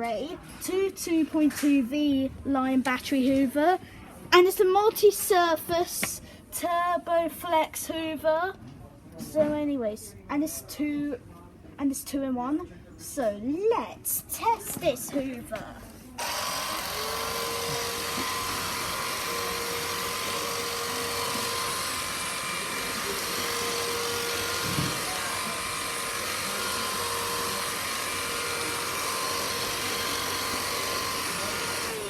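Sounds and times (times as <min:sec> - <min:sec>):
vacuum cleaner running: 0:16.2 - 0:32.0.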